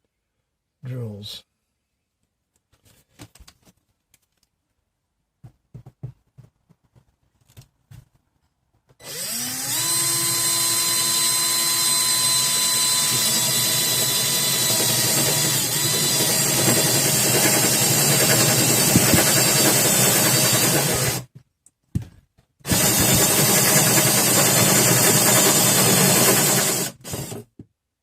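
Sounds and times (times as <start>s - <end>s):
electric drill running: 9.0s - 21.2s, 22.7s - 27.4s.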